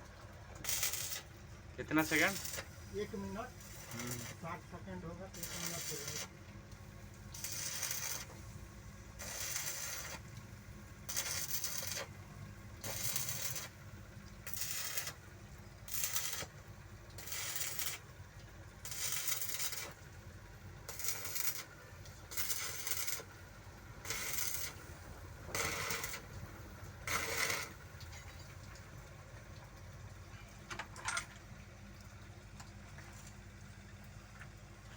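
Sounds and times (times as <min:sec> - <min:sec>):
rhythmic scraping strokes: 0:01.9 - 0:06.3, 0:17.2 - 0:18.0.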